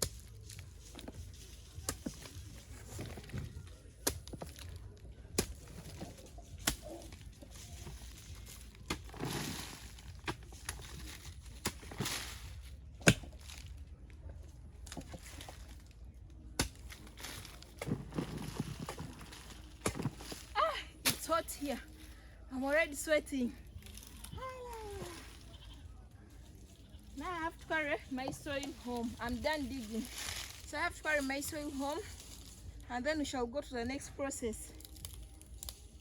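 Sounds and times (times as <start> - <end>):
loose soil scraping: 0.0 - 22.0
digging tool chopping soil: 6.6 - 7.1, 13.0 - 13.6, 16.6 - 20.4.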